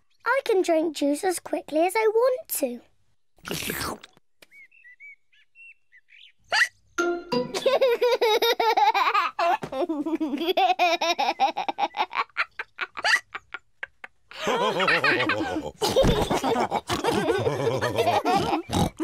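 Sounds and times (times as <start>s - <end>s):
cartoon characters laughing: 7.4s - 19.0s.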